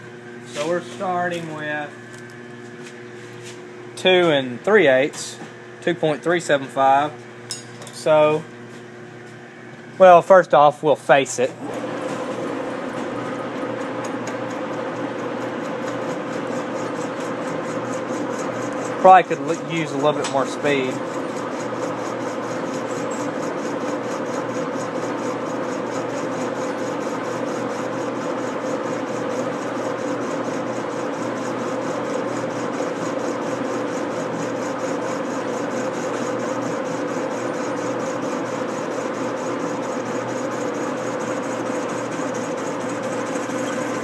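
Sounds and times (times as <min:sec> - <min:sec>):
lathe machine hum: 0:11.2 - 0:44.0
cutting tool scraping metal: 0:15.6 - 0:27.6, 0:31.4 - 0:44.0.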